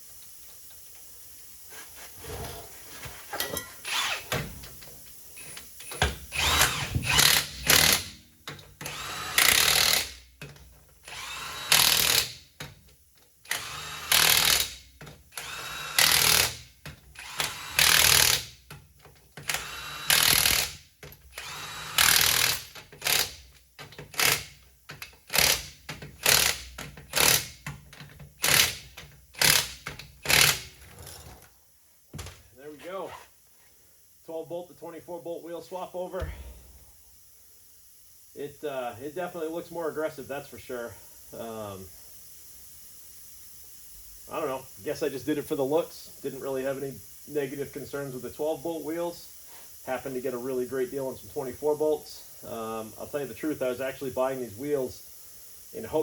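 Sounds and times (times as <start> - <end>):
power tool driving lug nuts: 3.4 - 31.4.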